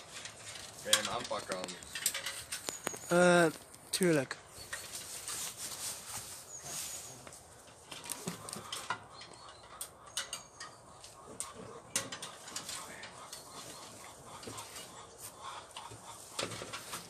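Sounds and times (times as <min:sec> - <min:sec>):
clicks and knocks of metal fixture: 0:11.4 - 0:13.2.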